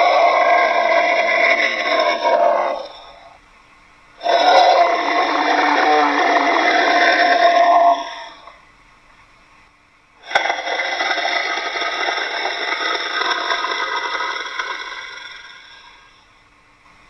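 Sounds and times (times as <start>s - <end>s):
dinosaur roar: 0.0s - 3.4s, 4.2s - 8.6s, 10.2s - 16.2s.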